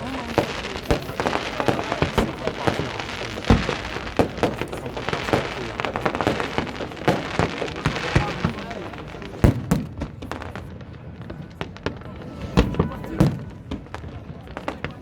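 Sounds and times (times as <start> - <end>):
fireworks banging and crackling: 0.0 - 15.0.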